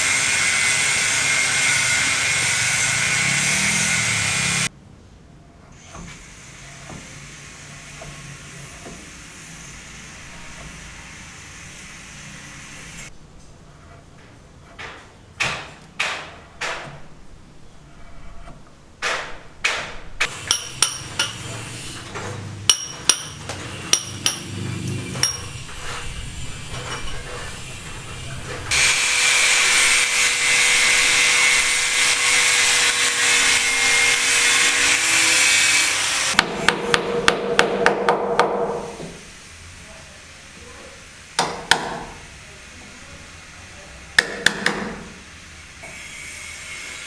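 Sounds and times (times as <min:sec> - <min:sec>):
power tool running: 0:00.0 - 0:04.7, 0:20.2 - 0:37.0
hammer blows: 0:19.0 - 0:39.2.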